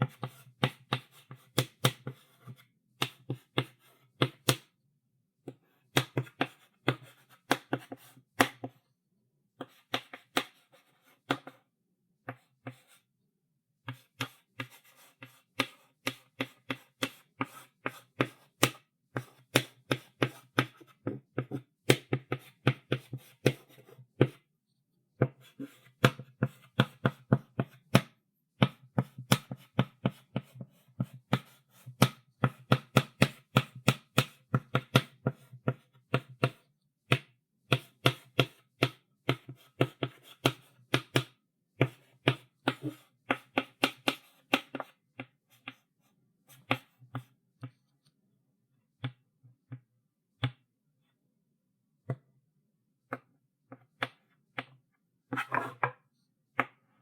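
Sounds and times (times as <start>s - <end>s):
chalk tapping on blackboard: 9.6s - 11.6s, 13.9s - 24.4s, 25.2s - 45.8s.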